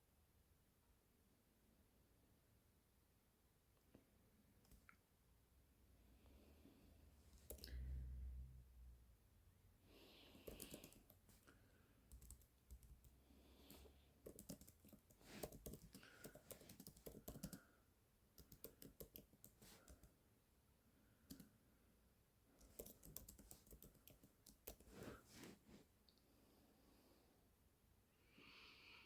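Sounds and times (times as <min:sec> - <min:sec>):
typing on computer keyboard: 0:10.4 - 0:11.2, 0:12.1 - 0:17.7, 0:18.4 - 0:20.2, 0:22.6 - 0:24.9.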